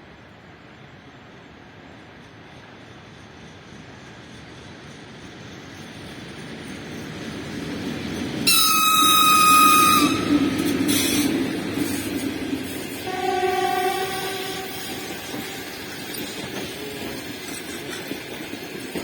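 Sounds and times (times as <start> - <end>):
electric locomotive rumble: 0.8 - 19.0
high-pitched train whistle: 8.4 - 17.0.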